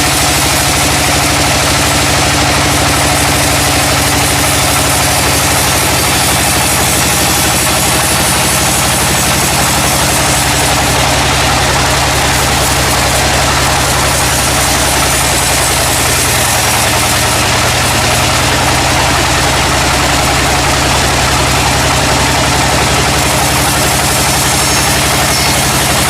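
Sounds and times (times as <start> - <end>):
sawmill engine running: 0.0 - 26.0
machinery hiss: 22.2 - 26.0.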